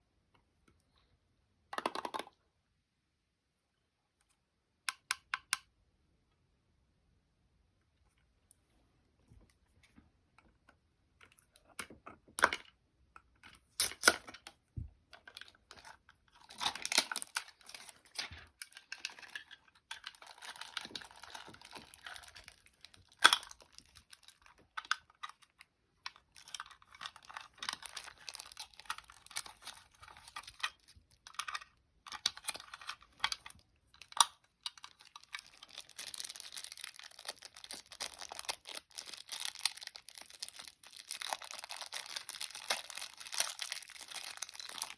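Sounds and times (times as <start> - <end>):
packaging crinkling and tearing: 15.3 - 44.9.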